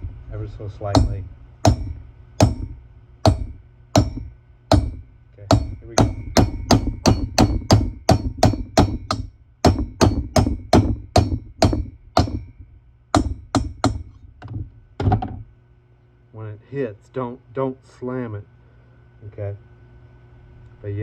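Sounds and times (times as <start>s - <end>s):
hammer tapping metal: 0.9s - 15.5s.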